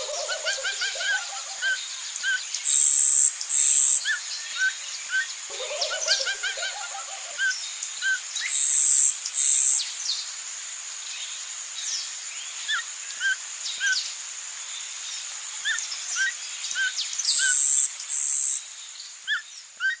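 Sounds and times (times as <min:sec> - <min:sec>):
birds chirping: 0:00.0 - 0:07.7
high buzzing bird calls: 0:00.0 - 0:20.0
steady hiss: 0:00.0 - 0:20.0.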